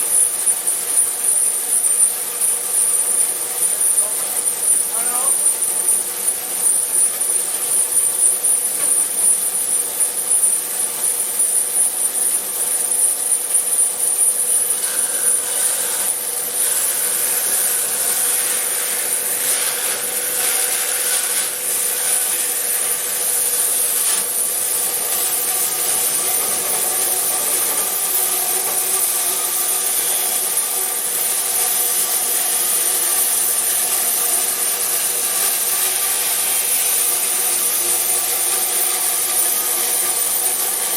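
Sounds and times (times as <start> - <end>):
band saw cutting wood: 0.0 - 40.9.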